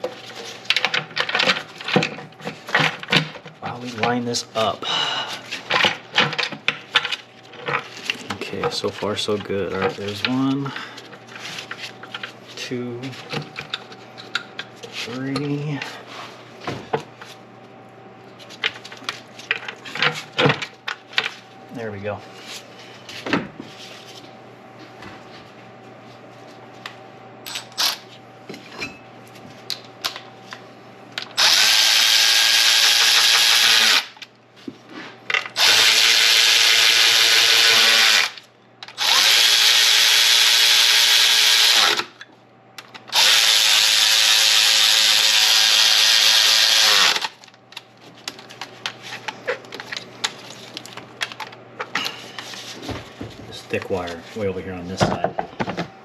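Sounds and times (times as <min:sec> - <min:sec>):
power drill driving bolts: 0:31.4 - 0:34.2, 0:35.6 - 0:42.1, 0:43.1 - 0:47.4.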